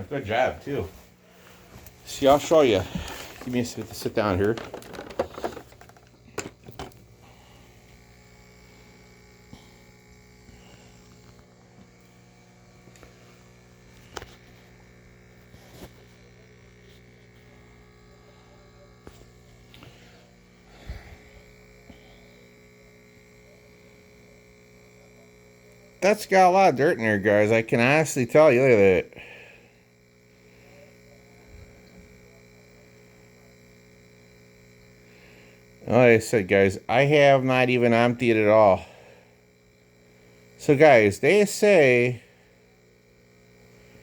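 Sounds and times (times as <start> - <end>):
electrical hum: 0.0 - 44.0
handling clicks and knocks: 4.4 - 7.0.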